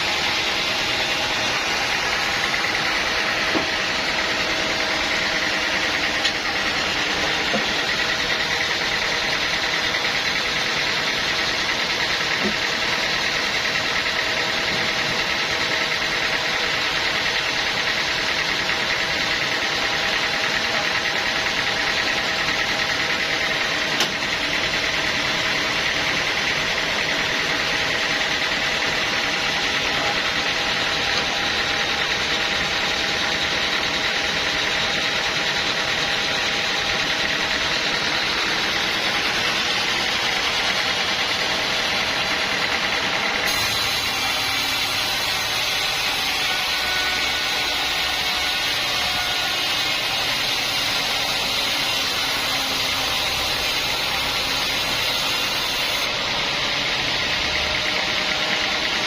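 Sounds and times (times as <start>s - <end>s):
sawmill machinery running: 0.0s - 59.0s.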